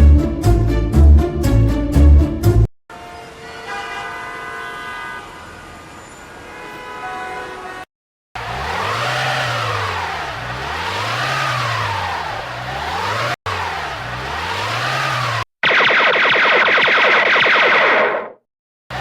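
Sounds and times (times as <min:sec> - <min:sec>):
held musical chords: 0:00.0 - 0:02.7
siren wailing: 0:13.7 - 0:18.4.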